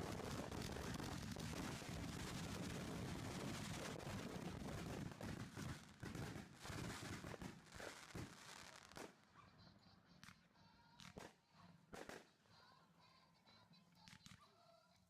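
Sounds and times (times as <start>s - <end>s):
fireworks crackling and popping: 0.0s - 9.3s, 11.0s - 12.4s, 14.0s - 14.4s.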